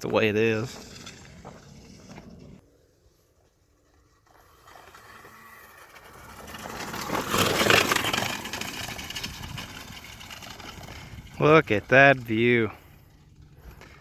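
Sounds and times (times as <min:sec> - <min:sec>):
motorbike passing by: 0:04.2 - 0:14.0.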